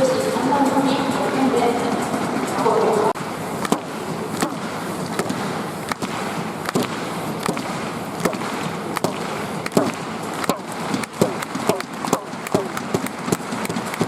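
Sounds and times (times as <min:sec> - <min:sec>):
crowd murmur: 0:00.0 - 0:14.0
crowd clapping in rhythm: 0:03.6 - 0:14.0.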